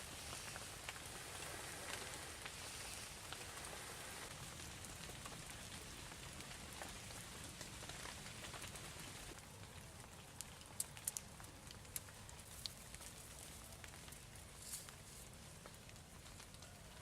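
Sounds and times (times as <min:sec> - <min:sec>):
faint rain-like hiss: 0:00.0 - 0:17.0
small ticks: 0:10.4 - 0:16.8.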